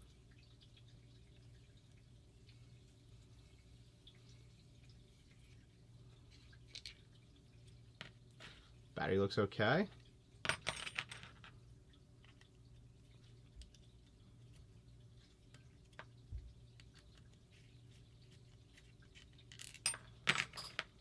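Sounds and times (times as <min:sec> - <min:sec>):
metal tools clinking and rattling: 0:10.5 - 0:11.5, 0:19.5 - 0:21.0.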